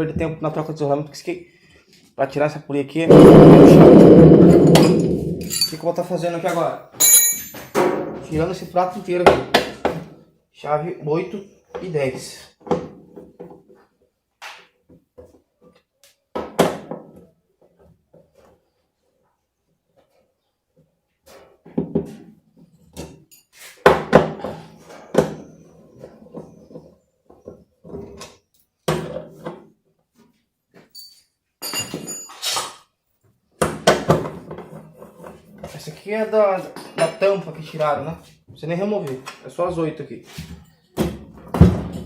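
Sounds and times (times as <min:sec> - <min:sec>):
heavy metal clank: 0:03.1 - 0:05.8, 0:07.0 - 0:08.2
hand tools clattering on metal: 0:05.4 - 0:06.0, 0:07.0 - 0:07.8, 0:31.0 - 0:32.7.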